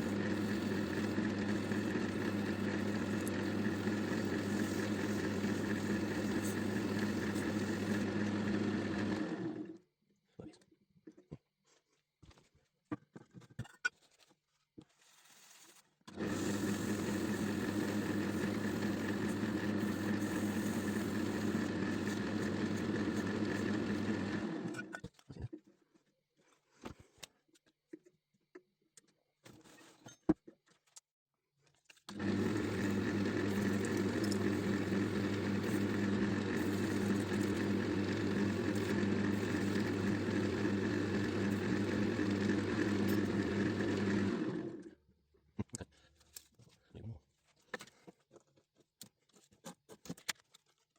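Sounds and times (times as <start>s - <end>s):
lathe motor humming: 0.0s - 9.8s, 16.1s - 24.9s, 32.1s - 44.9s.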